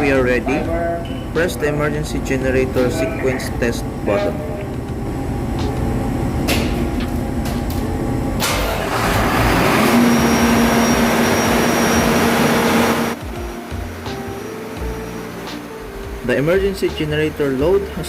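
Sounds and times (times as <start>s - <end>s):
diesel generator engine running: 0.0s - 18.0s
machinery hum: 0.0s - 18.0s.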